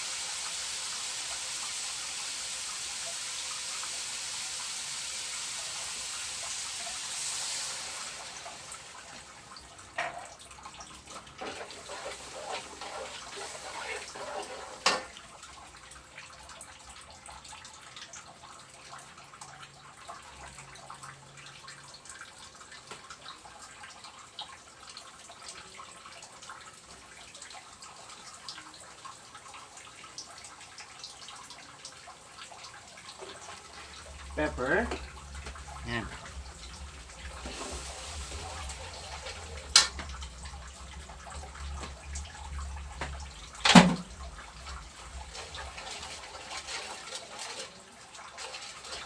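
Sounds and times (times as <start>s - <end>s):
cooking hiss: 0.0s - 10.4s, 11.2s - 15.2s, 33.1s - 41.7s
cookware and utensils clattering: 9.9s - 10.4s, 11.4s - 15.2s, 45.4s - 49.0s.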